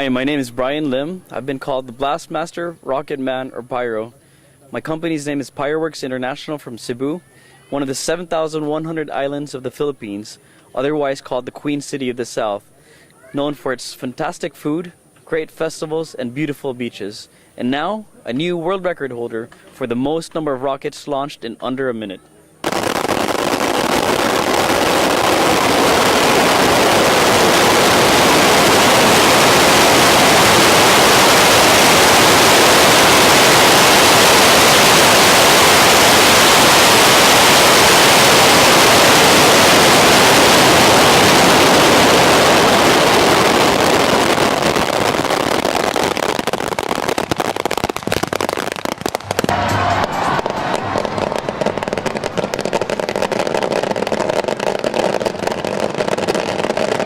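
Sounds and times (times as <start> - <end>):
firework bangs and crackles: 22.6 - 57.0
firework rockets whooshing: 22.6 - 57.0.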